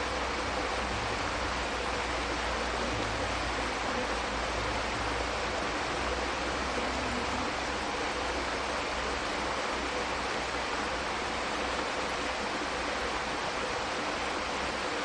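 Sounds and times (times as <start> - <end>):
flowing water rushing: 0.0 - 15.0.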